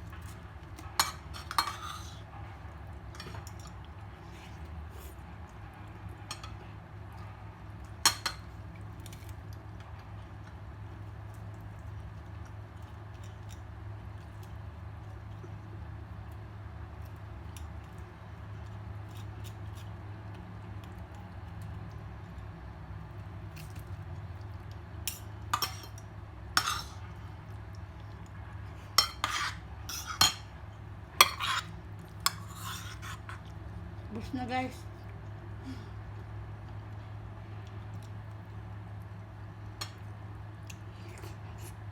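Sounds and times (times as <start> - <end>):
plates and utensils clinking: 1.0 - 2.2, 29.0 - 30.5, 31.2 - 31.7.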